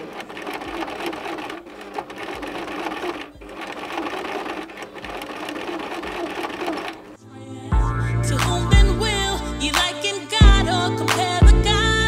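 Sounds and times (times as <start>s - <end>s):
sewing machine stitching: 0.0s - 7.2s.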